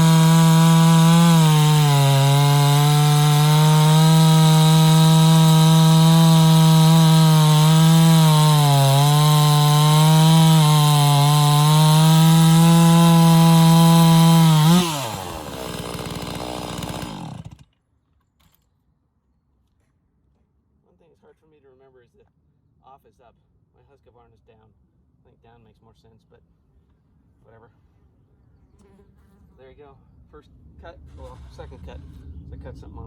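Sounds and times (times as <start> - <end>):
chainsaw cutting wood: 0.0 - 17.8.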